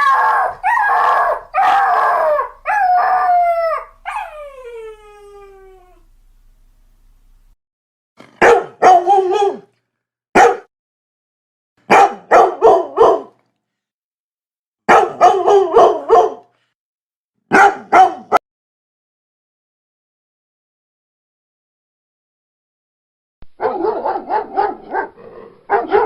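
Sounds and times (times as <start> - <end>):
dog barking: 0.0 - 2.8, 8.4 - 9.7, 10.4 - 10.7, 11.9 - 13.4, 14.9 - 16.5, 17.5 - 18.4, 23.6 - 26.0.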